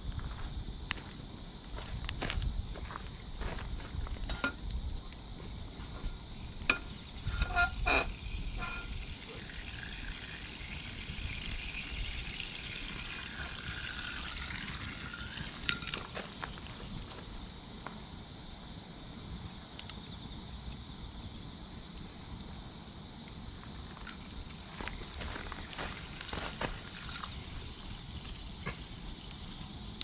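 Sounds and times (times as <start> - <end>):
fire crackling and popping: 0.0 - 30.0
meat sizzling: 6.6 - 17.0.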